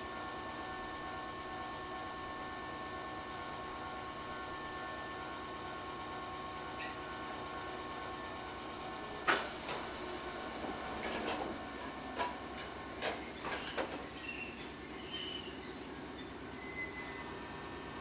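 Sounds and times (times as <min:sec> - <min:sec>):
faint high squeals: 0:12.6 - 0:18.0.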